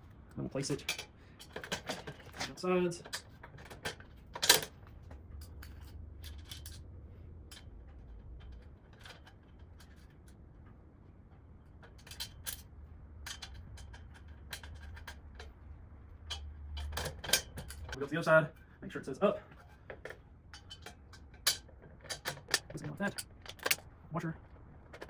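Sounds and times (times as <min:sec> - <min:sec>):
metallic clicks of hardware: 0:19.9 - 0:23.9.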